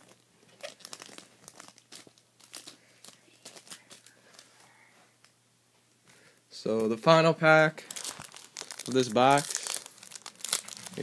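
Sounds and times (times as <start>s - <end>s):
foil wrapper crinkling: 0.0s - 4.5s, 7.8s - 11.0s.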